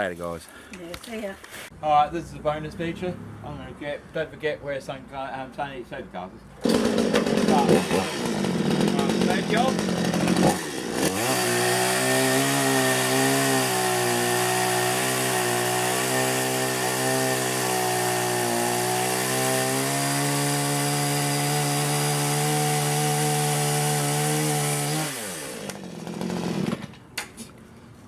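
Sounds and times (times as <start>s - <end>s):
chainsaw cutting wood: 6.6s - 27.1s.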